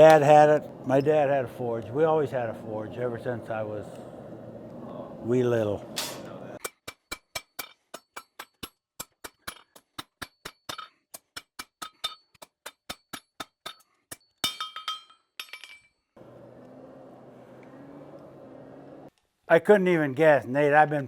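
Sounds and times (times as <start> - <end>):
hammer striking steel on anvil: 6.0 - 12.2.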